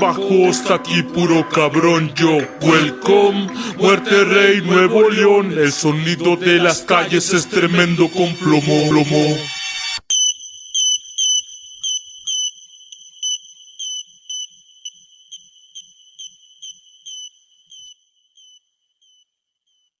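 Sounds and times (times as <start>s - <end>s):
high-pitched electronic beeps: 2.6s - 3.0s, 7.6s - 18.6s.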